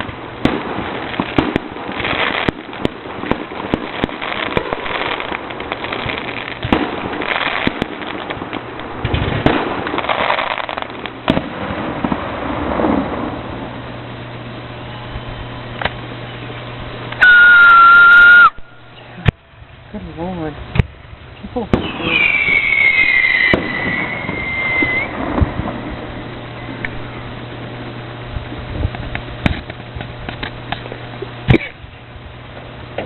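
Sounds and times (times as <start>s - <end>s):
fireworks bangs and crackling: 0.0s - 18.4s, 20.6s - 33.0s
shrill steady whistle: 17.2s - 18.7s, 22.0s - 25.1s.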